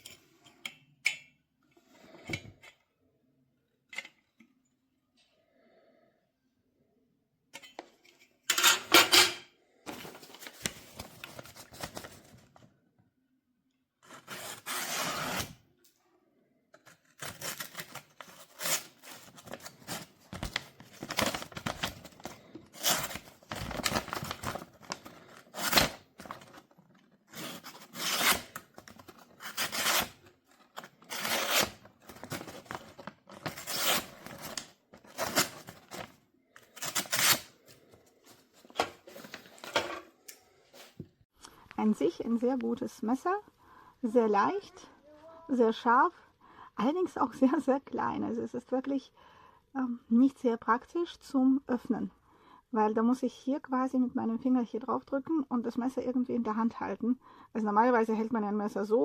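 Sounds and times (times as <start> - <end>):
packaging tearing and rustling: 16.9 - 37.8.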